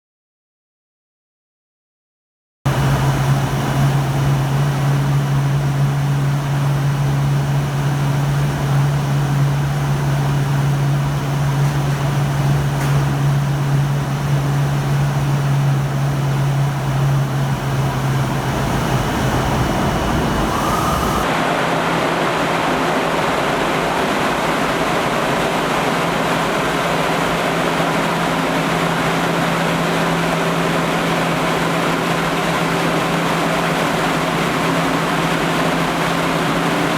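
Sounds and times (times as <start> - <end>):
industrial fan humming: 2.7 - 36.9
rushing air: 16.4 - 27.8.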